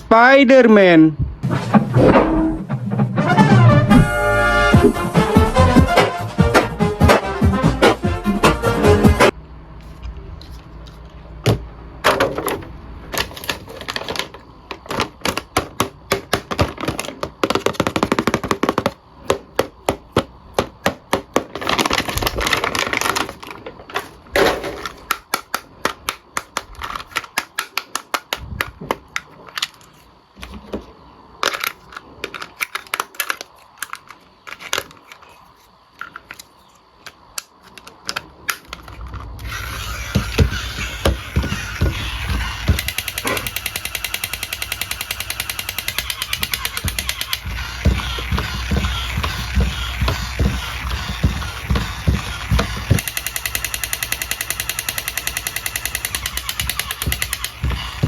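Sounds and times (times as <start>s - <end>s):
plastic toy clicks and taps: 25.0s - 28.7s, 39.5s - 58.0s.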